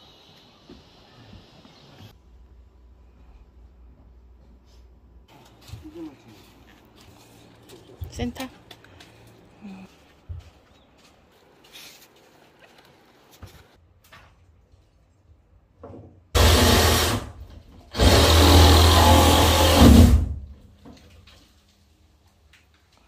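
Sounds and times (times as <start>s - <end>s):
power drill running: 16.4s - 17.3s, 17.9s - 20.2s.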